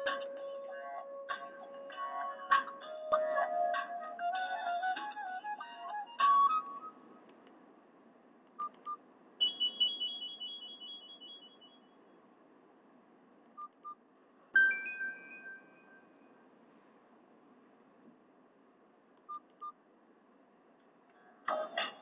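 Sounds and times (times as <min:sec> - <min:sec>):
phone key beeps: 0:08.6 - 0:11.8.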